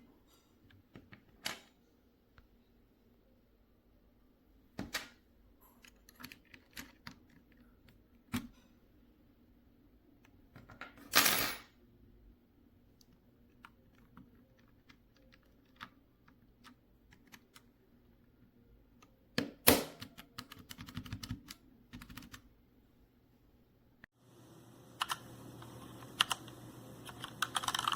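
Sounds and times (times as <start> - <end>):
keyboard keys clicking: 20.0 - 22.4, 25.0 - 27.9.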